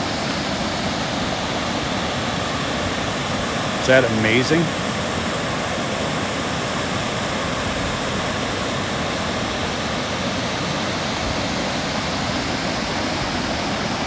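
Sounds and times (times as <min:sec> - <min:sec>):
waterfall roaring: 0:03.8 - 0:04.8.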